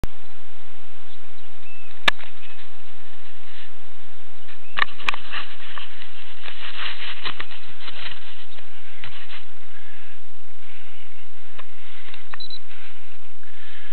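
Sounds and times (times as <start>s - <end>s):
sharp clicks and scratching: 4.7s - 9.5s.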